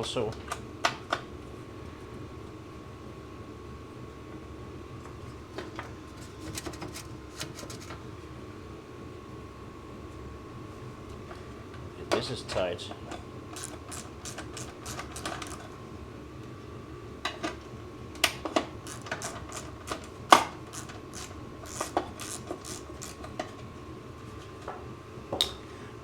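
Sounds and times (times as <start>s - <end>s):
hand tools clicking on metal: 13.6s - 15.7s, 18.2s - 23.5s.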